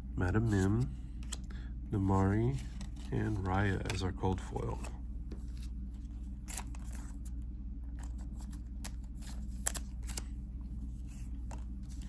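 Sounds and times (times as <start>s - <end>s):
steady low hum: 0.0s - 12.0s
cards and wrappers clicking and rustling: 2.6s - 4.9s.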